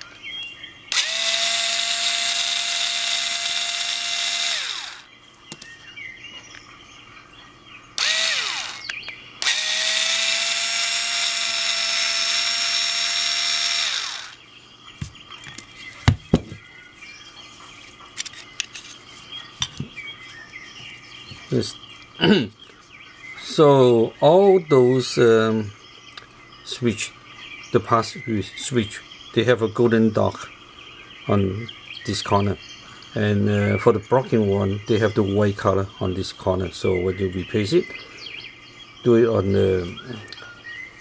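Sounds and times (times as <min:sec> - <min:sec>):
electric screwdriver whining: 0:00.9 - 0:05.1, 0:08.0 - 0:14.4
sharp clicks: 0:08.0 - 0:14.4.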